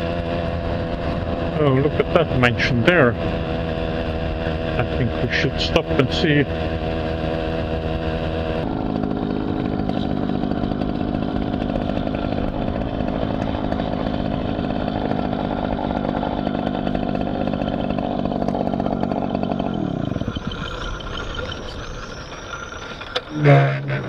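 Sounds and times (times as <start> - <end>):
moped engine revving: 0.0 - 24.0
birds chirping faintly: 18.6 - 24.0.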